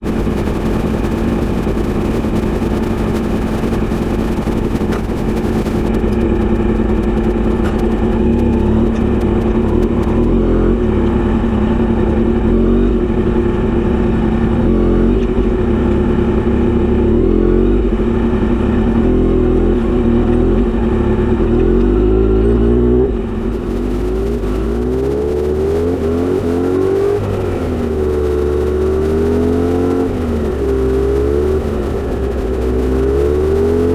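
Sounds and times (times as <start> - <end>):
motorcycle engine running loud: 0.0 - 33.9.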